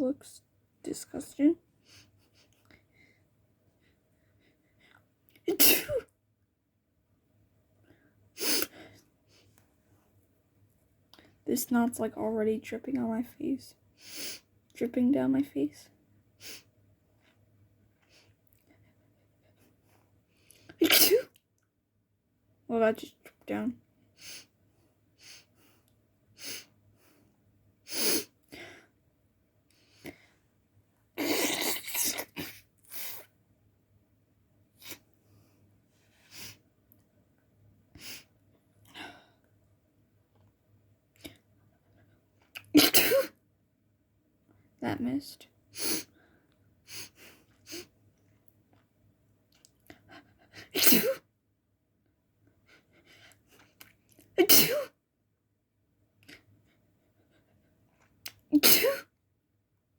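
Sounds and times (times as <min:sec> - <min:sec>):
person sneezing: 0:05.5 - 0:06.1, 0:20.8 - 0:21.3, 0:42.8 - 0:43.4, 0:50.6 - 0:51.2, 0:54.4 - 0:55.0, 0:58.6 - 0:59.1
breaths: 0:28.5 - 0:29.0.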